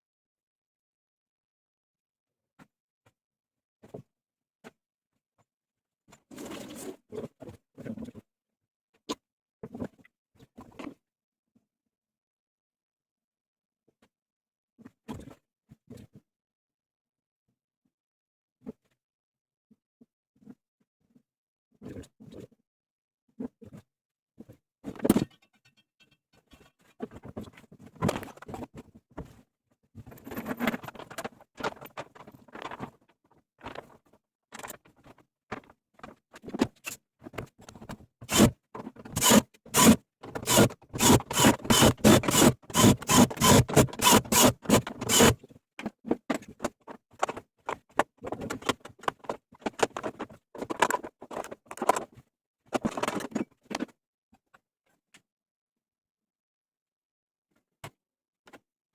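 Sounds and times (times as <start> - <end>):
tools knocking and scraping metal: 39.2 - 45.4.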